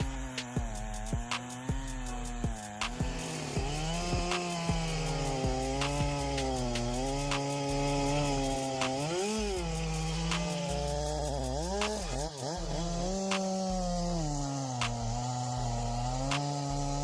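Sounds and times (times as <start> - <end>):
chainsaw cutting wood: 0.0 - 17.0
sharp clicks: 2.7 - 3.3, 14.8 - 15.1.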